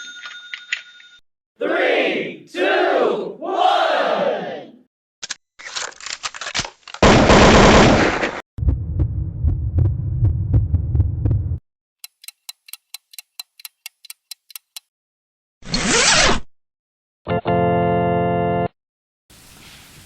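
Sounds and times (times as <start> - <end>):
low pulsing humming throb: 8.6 - 11.6
rapid high ticks: 12.0 - 14.9.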